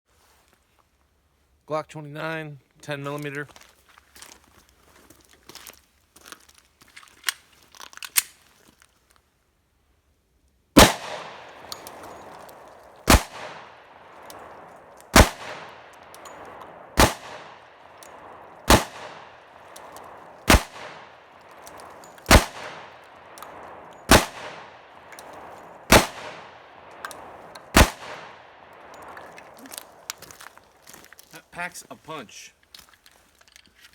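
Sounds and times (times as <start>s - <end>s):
pistol shots echoing: 10.8s - 30.1s
sharp clicks: 14.2s - 30.3s.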